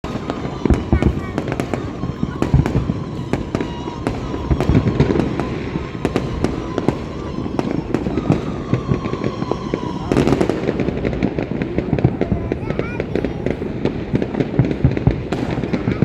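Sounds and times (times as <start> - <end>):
fireworks crackling pops and bangs: 0.0 - 16.0.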